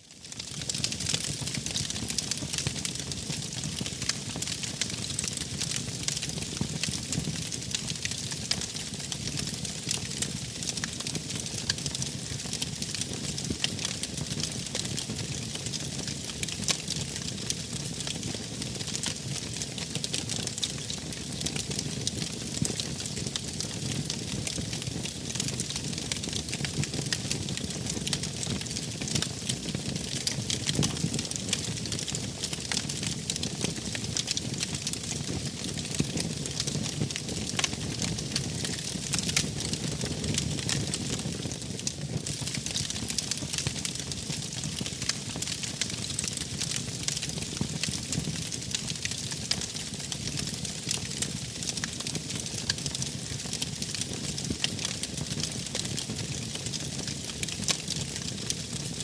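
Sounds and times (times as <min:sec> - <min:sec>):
wood fire crackling: 0:00.3 - 0:59.0.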